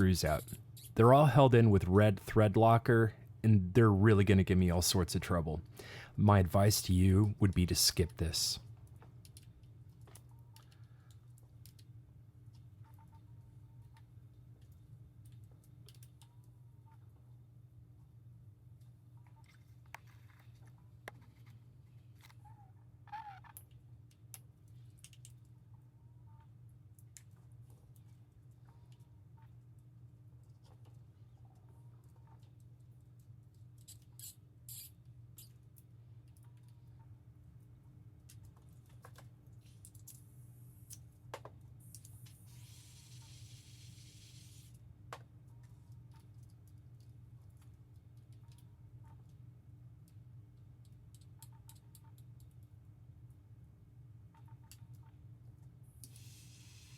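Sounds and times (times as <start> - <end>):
steady low hum: 0.0 - 22.9
low steady hum: 0.0 - 56.9
hiss: 42.4 - 44.7, 56.1 - 56.9.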